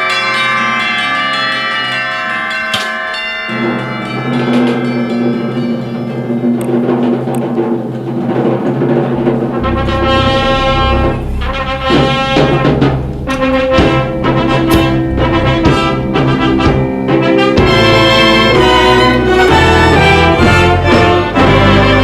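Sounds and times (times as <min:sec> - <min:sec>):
timpani: 0:06.4 - 0:22.0
deep low orchestral part: 0:06.6 - 0:22.0
brass chords: 0:07.4 - 0:22.0.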